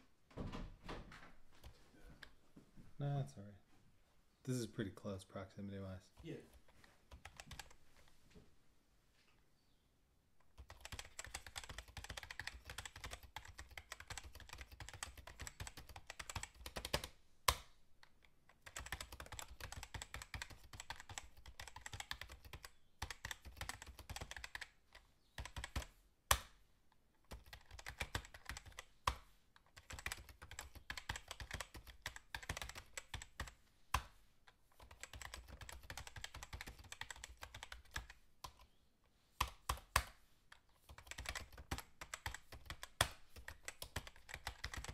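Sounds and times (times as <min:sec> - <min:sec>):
fast typing on keyboard: 0:07.1 - 0:07.8, 0:10.5 - 0:17.1, 0:18.5 - 0:25.9, 0:27.3 - 0:33.6, 0:34.8 - 0:38.7, 0:40.8 - 0:44.9.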